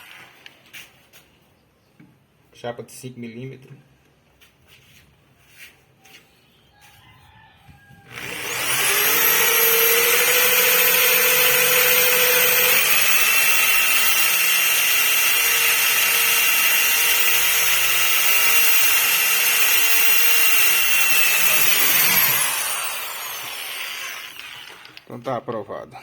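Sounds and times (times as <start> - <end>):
drill whining while drilling steel: 0.0 - 0.6, 8.0 - 25.1.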